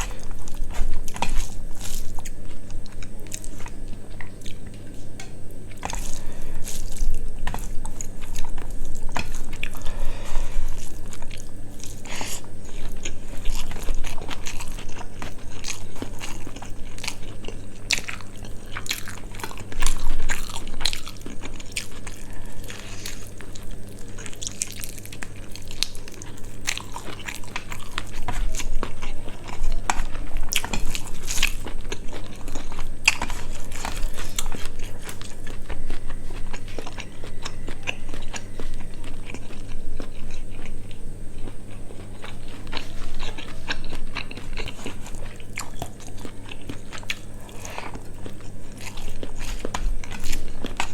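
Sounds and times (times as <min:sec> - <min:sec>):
chewing and biting food: 0:00.0 - 0:50.9.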